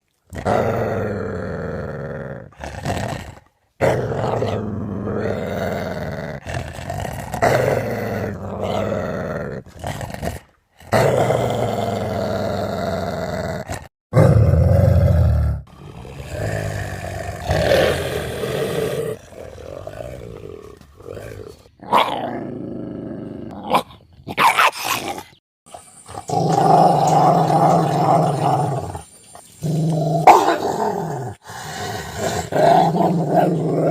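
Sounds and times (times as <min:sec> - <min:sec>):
large dogs growling: 0:00.3 - 0:23.8, 0:25.7 - 0:33.9.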